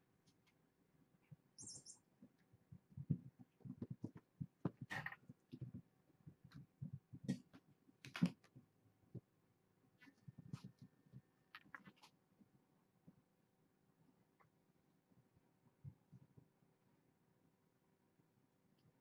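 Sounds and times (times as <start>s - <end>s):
faint high kitten squeaks: 1.6s - 2.1s
kittens thumping and rustling: 2.2s - 9.3s.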